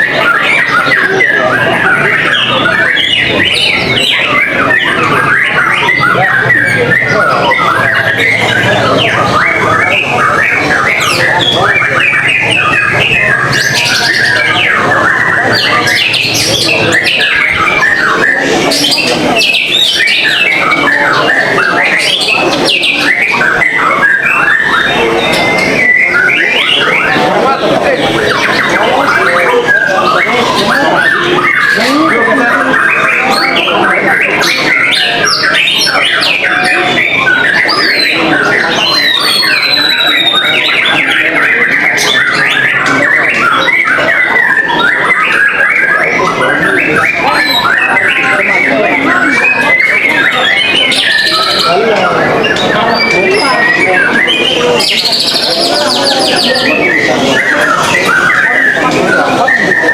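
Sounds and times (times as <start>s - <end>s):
birds singing whistled phrases: 0.0s - 59.9s.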